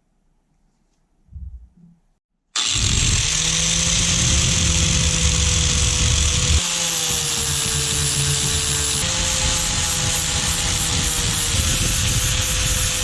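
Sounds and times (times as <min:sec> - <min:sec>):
electric power tool running: 0:02.6 - 0:13.0.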